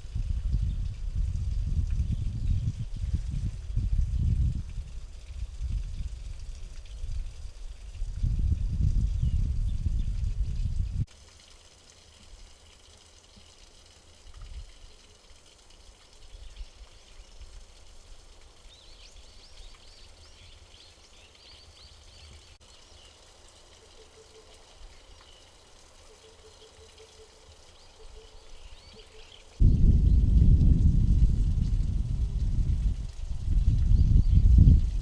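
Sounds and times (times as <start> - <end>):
faint low rumble: 29.6 - 35.0.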